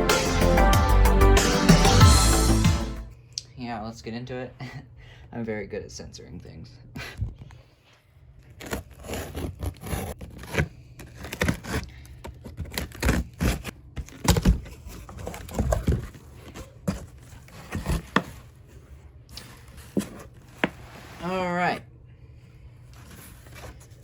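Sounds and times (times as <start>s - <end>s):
packing tape scraped and torn: 8.4s - 16.6s.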